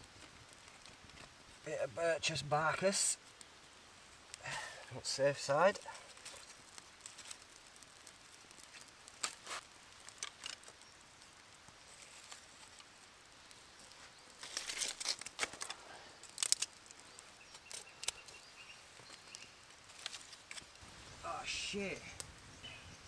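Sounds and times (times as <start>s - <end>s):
small fire crackling: 0.0s - 23.0s
sharp snap of fire: 5.6s - 23.0s.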